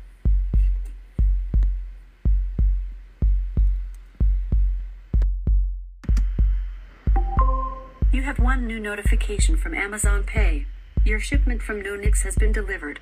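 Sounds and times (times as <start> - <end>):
heartbeat thumps: 0.3 - 7.4, 8.0 - 12.7.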